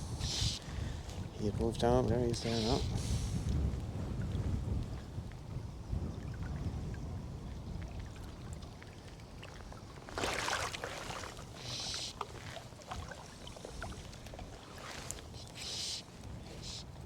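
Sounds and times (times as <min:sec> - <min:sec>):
wind rumble on microphone: 0:00.0 - 0:17.0
water splashing: 0:08.0 - 0:16.1.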